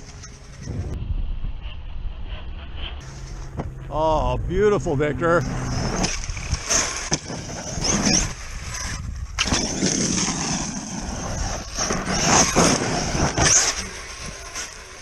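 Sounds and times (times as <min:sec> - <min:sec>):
electric motors whining: 0:05.2 - 0:15.0.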